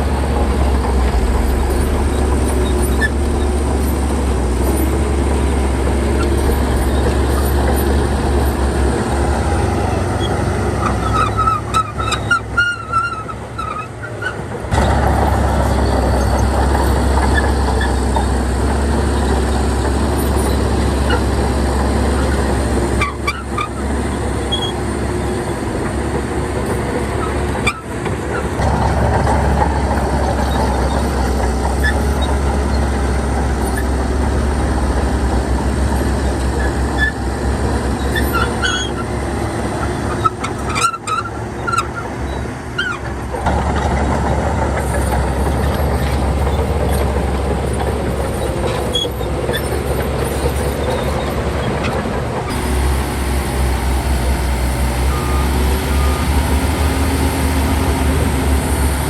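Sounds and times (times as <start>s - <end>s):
diesel machinery rumbling: 0.0s - 59.0s
high squeals: 0.6s - 8.0s, 52.5s - 59.0s.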